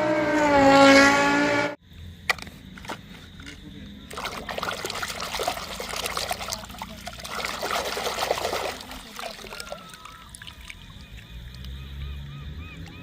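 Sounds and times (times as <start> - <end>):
water pouring and splashing: 4.1 - 11.8.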